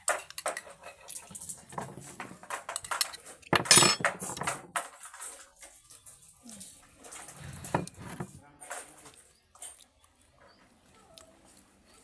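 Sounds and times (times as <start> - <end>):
spoon clinking against dish: 3.6 - 4.4.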